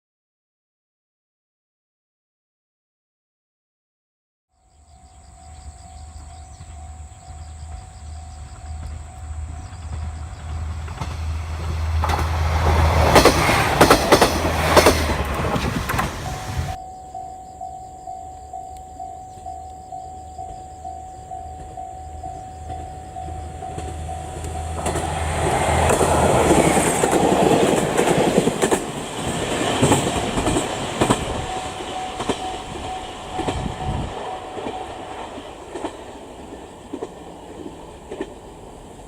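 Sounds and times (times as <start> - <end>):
level crossing warning bell: 4.7 - 10.8, 16.2 - 36.4
diesel railcar engine throb: 4.7 - 16.8, 18.5 - 39.0
train wheels clacking over rail joints: 6.3 - 16.8, 22.5 - 39.0.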